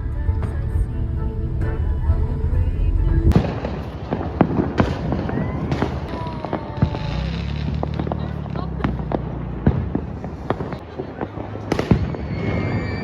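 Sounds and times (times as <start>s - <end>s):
music: 0.0s - 3.6s
fireworks bangs and cracks: 3.3s - 13.0s
rockets whistling: 3.3s - 13.0s.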